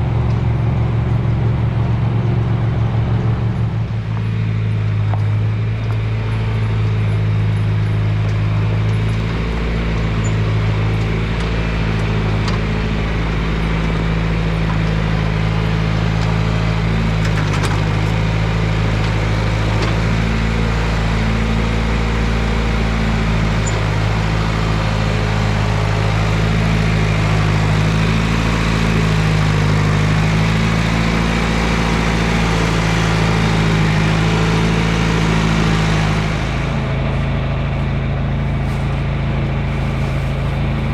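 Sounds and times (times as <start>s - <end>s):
engine humming: 0.0s - 40.9s.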